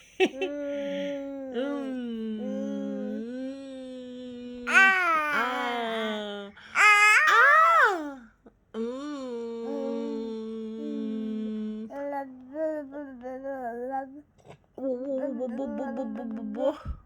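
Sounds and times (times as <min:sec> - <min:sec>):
person humming: 0:00.4 - 0:06.4, 0:08.8 - 0:14.2, 0:14.8 - 0:17.0.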